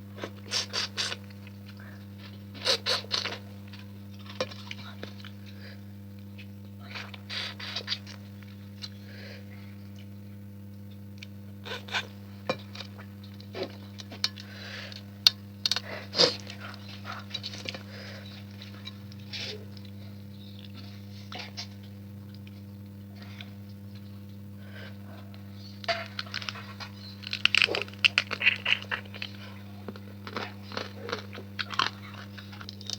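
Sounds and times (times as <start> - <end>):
steady low hum: 0.0 - 32.9
chewing: 10.9 - 32.9.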